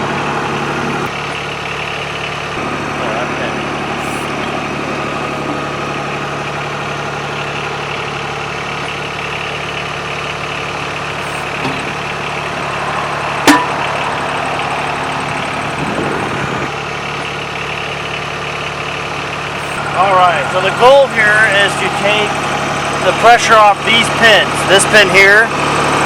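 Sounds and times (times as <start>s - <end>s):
tractor diesel engine idling: 0.0s - 26.0s
sharp metallic clank: 13.4s - 14.0s.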